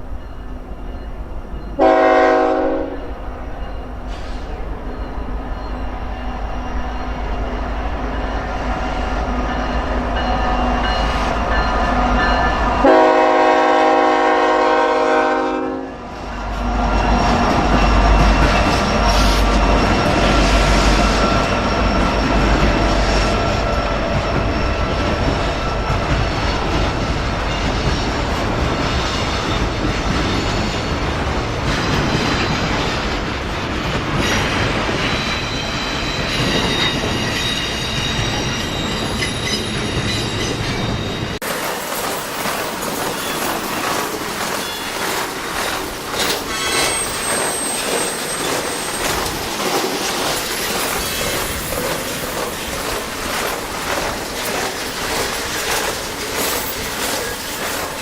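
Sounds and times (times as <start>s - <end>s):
locomotive air horn: 1.8s - 3.1s, 12.8s - 16.0s
train wheels rumbling and clattering: 3.0s - 58.0s.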